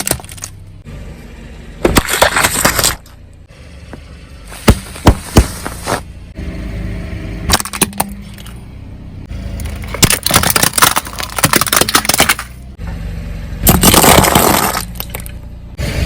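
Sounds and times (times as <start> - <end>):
tyres crushing objects: 0.0 - 0.6, 1.8 - 3.2, 4.5 - 6.1, 7.5 - 8.5, 9.5 - 12.8, 13.6 - 15.4
car engine running: 0.0 - 16.0.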